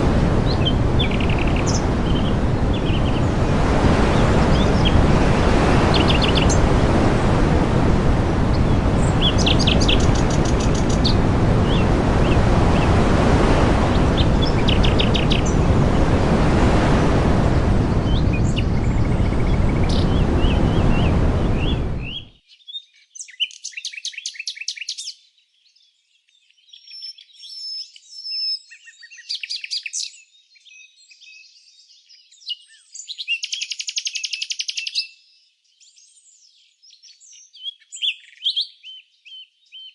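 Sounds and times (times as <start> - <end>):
loud steady rushing noise: 0.0 - 22.3
small birds chirping and trilling: 0.4 - 6.8, 8.5 - 16.1, 17.9 - 39.9.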